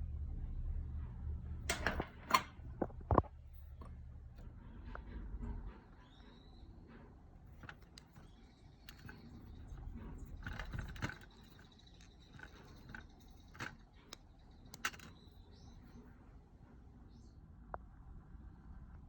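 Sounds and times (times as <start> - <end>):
small tools clicking and clinking: 7.5 - 15.2.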